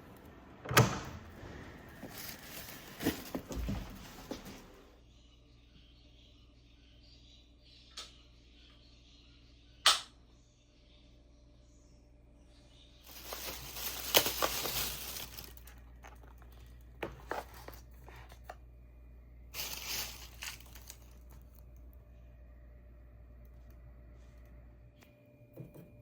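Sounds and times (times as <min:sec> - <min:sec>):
crinkling and rustling: 0:01.8 - 0:04.9, 0:13.0 - 0:18.6, 0:19.6 - 0:21.7.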